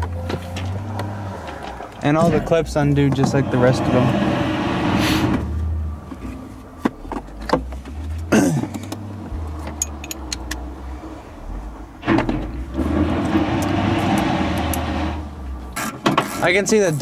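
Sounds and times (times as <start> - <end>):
low steady rumble: 0.0 - 15.8
hand tools clicking on parts: 9.6 - 10.6.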